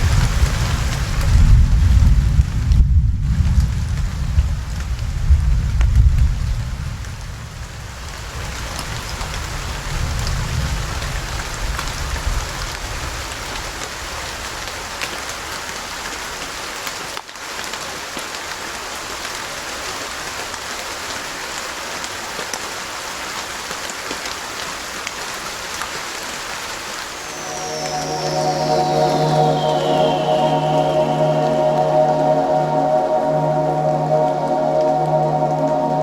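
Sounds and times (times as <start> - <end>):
steady rain falling: 0.0 - 36.0.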